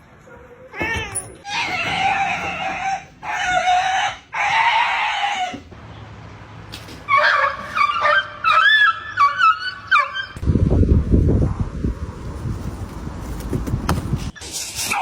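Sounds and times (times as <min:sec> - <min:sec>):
dog yelping and whining: 0:07.1 - 0:10.4.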